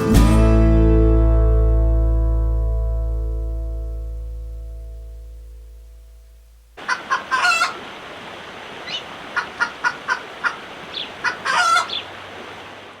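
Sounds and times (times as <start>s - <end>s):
chickens clucking: 6.8s - 7.9s, 8.8s - 12.2s.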